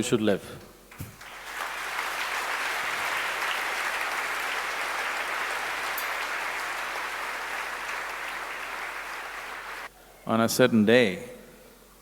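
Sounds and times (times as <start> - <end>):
audience applauding: 0.9 - 9.9.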